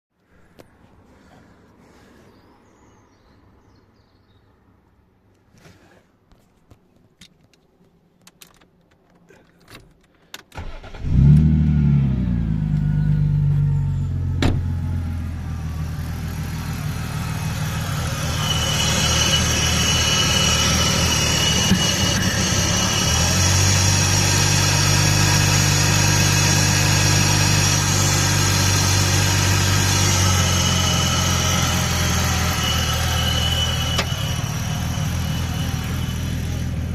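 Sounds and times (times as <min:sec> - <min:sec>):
car engine starting and idling: 0:10.6 - 0:36.9.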